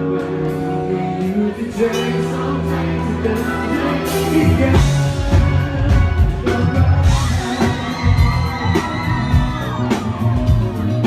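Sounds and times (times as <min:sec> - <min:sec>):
pop song with drums: 0:00.0 - 0:11.0
crowd cheering and whooping: 0:07.0 - 0:11.0.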